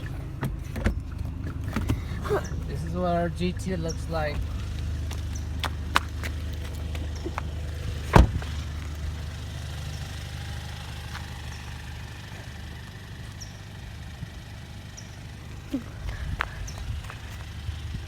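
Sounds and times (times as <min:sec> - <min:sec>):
car engine idling: 0:00.0 - 0:18.0
loud thump: 0:08.1 - 0:08.5.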